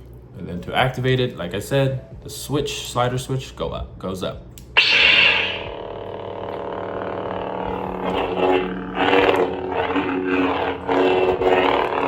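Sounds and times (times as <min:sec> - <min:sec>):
lightsaber electric hum: 0:00.0 - 0:12.0
lightsaber swing surges: 0:04.8 - 0:05.8.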